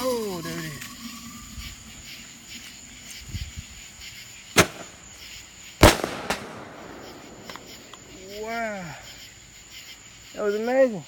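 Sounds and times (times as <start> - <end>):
crickets chirping: 0.0 - 11.0
firework bangs: 4.5 - 8.4.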